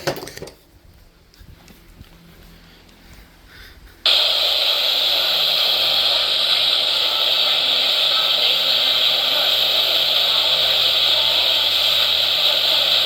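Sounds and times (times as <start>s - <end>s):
radio static hiss: 4.0s - 13.0s.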